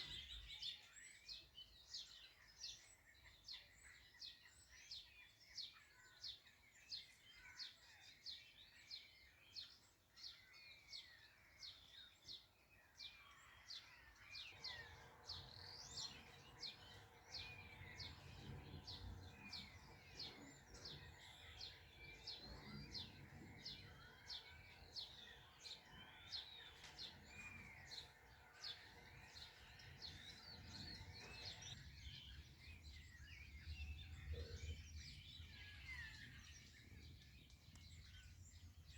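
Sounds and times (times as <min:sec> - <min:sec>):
songbirds chirping: 0:00.0 - 0:38.9.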